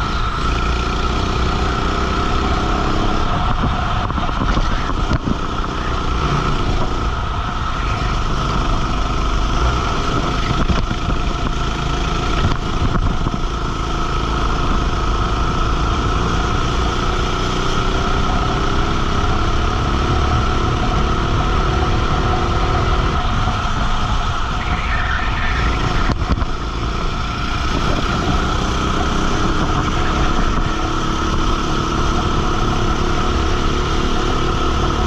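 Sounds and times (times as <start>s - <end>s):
go-kart engine running: 0.0s - 35.0s.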